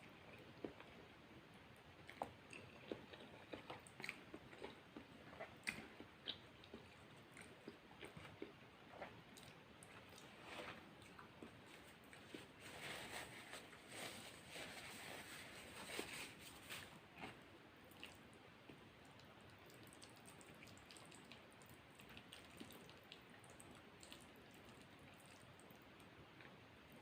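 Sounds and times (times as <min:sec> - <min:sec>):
wet chewing mouth sounds: 0:02.0 - 0:12.5, 0:17.9 - 0:25.8.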